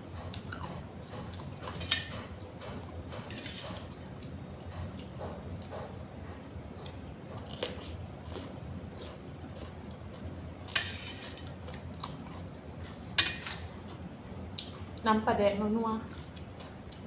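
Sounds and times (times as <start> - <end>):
steady low hum: 0.0 - 17.0
person chewing food: 0.1 - 15.0, 16.1 - 17.0.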